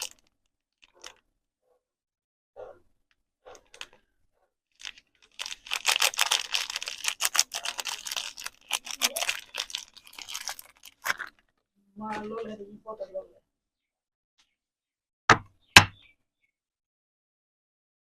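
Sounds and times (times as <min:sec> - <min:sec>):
wrapper crinkling and tearing: 0:00.0 - 0:01.2, 0:04.7 - 0:11.6.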